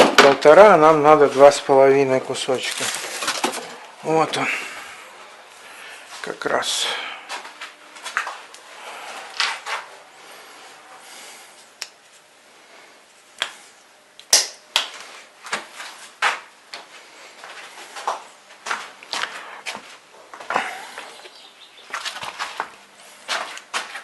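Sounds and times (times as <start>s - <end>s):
cable rustling: 2.6s - 3.9s.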